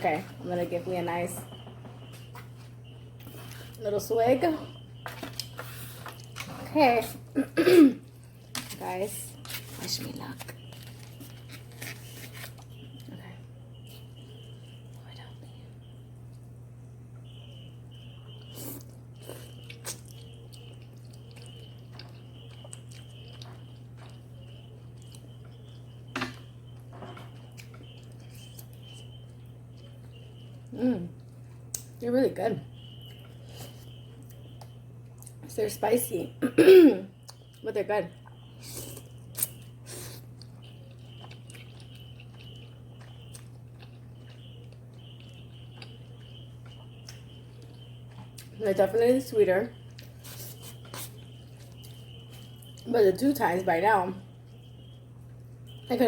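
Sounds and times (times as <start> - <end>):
steady low hum: 0.0 - 56.0
person chewing: 5.0 - 6.5, 9.4 - 13.1, 18.3 - 26.0, 26.6 - 31.9, 38.2 - 48.6, 49.8 - 52.8.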